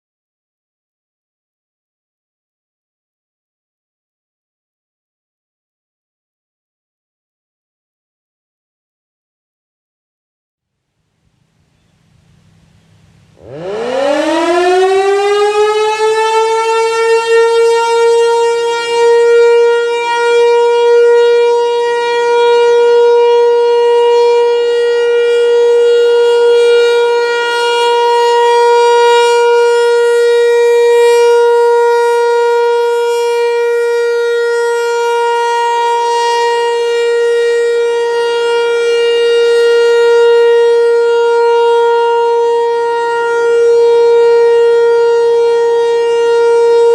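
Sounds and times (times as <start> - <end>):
warning siren winding up: 13.4 - 46.9.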